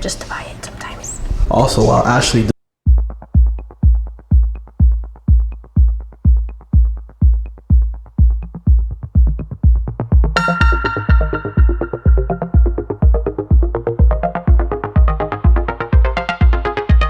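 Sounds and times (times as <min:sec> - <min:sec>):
drum machine beat: 0:02.8 - 0:17.0
synthesizer chords: 0:02.9 - 0:17.0.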